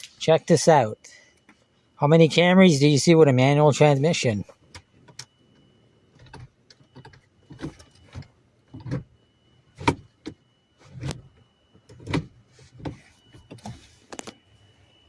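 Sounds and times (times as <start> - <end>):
gear shifter clunks and clicks: 4.6 - 5.6, 6.2 - 14.4.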